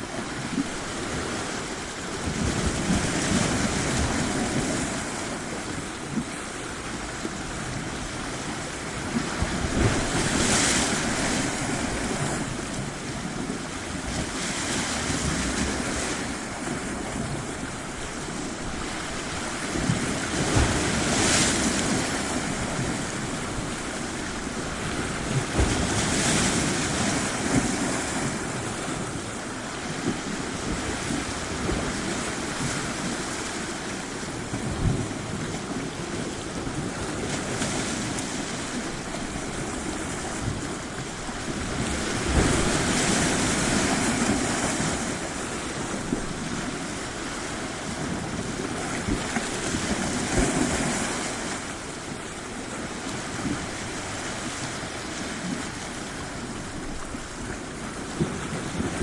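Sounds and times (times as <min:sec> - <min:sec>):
ocean waves washing onto shore: 0:00.0 - 0:59.0
wind thumps on microphone: 0:09.0 - 0:29.2, 0:34.3 - 0:51.6, 0:52.8 - 0:59.0.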